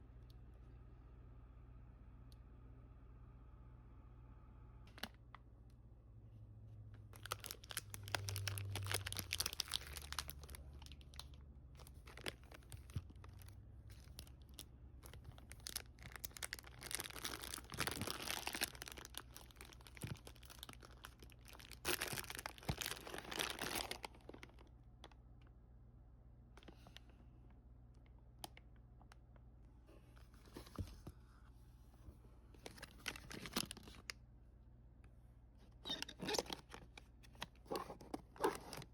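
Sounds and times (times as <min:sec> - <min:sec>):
packaging crinkling and tearing: 0:07.2 - 0:24.7, 0:32.6 - 0:34.1, 0:35.9 - 0:38.9.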